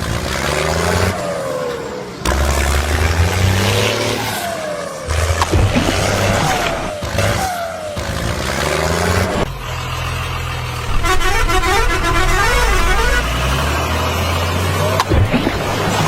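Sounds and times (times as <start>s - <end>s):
truck engine droning: 0.0s - 16.0s
horn playing a quick tune: 10.9s - 13.5s.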